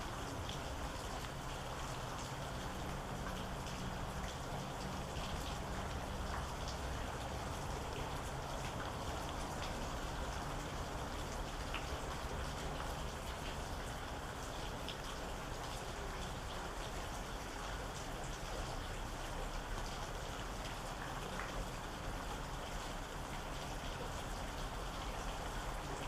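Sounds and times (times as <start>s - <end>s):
steady rain hiss: 0.0s - 26.0s
raindrops ticking: 0.2s - 26.0s.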